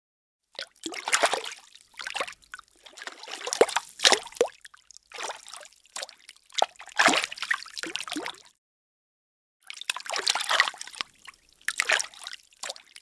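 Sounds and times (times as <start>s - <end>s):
bathtub water sloshing and splashing: 0.5s - 8.6s, 9.6s - 13.0s.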